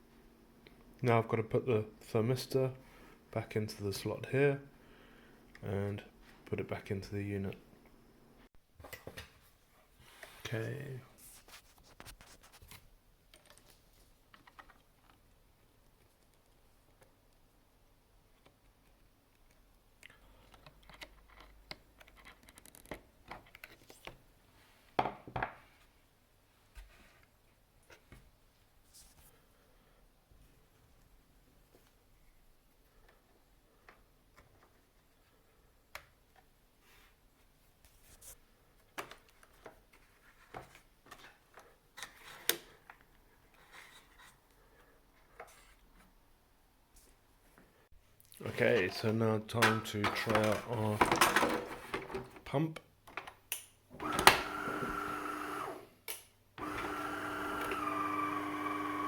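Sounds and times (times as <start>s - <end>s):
small clicks and taps of parts: 18.4s - 24.2s.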